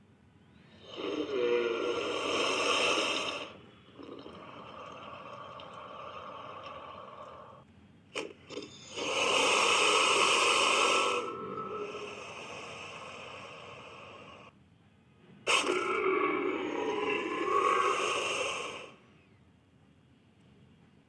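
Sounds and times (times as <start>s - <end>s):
creature breathy hiss: 0.8s - 3.6s, 8.6s - 14.5s, 15.5s - 19.0s.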